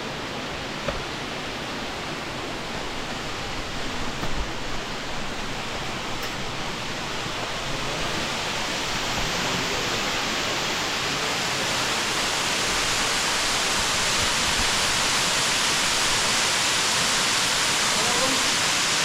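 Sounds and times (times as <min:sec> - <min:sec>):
waterfall roaring: 0:00.0 - 0:19.0.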